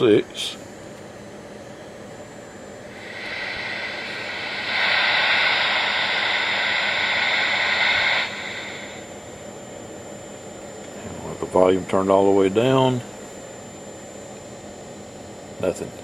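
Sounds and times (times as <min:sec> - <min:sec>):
radio receiver static hiss: 0:02.9 - 0:09.4.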